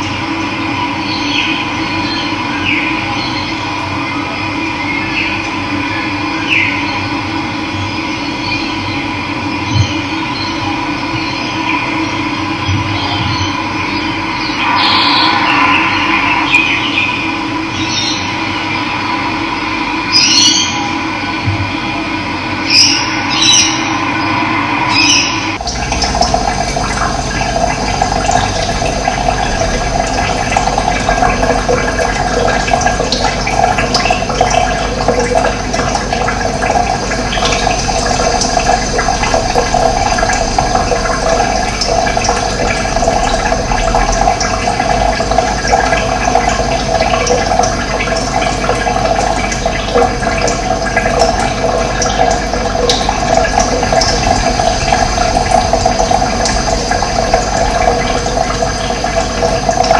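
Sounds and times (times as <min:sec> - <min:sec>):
running water rushing: 0:13.0 - 0:21.4, 0:22.6 - 0:59.9.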